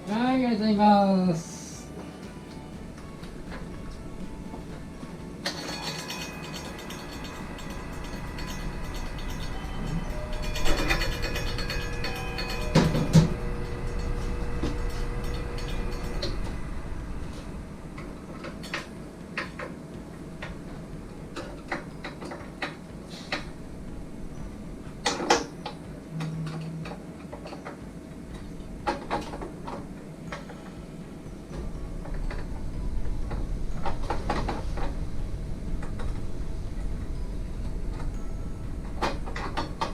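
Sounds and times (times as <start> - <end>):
metal clanks: 1.9 - 39.9
metal parts clicking and knocking: 5.4 - 16.5.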